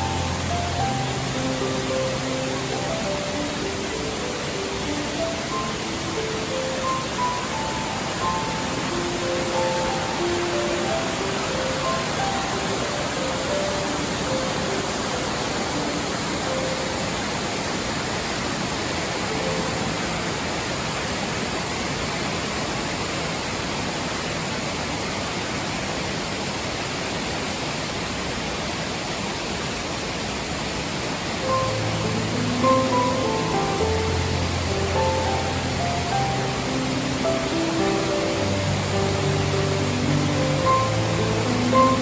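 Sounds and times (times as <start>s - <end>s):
soft piano notes: 0.0s - 18.1s, 31.4s - 42.0s
waterfall rushing: 0.0s - 42.0s.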